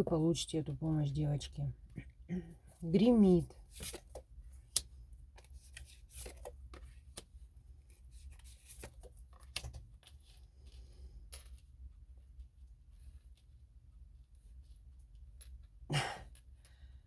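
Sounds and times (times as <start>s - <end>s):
cards rustling and shuffling: 3.0s - 10.5s.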